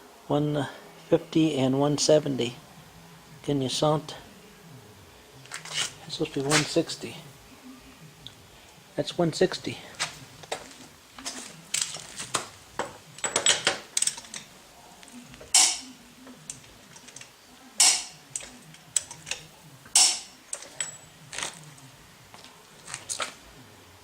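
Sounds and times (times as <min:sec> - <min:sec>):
hand tools clicking and knocking: 0:10.4 - 0:14.5, 0:15.4 - 0:21.6.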